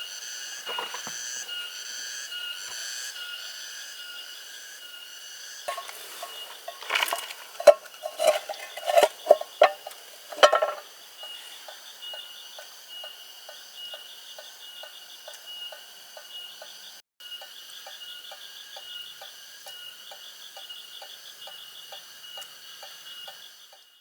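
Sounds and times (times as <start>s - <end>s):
insect chorus trilling: 0.0s - 24.0s
sharp knocks and clinks: 5.7s - 10.8s.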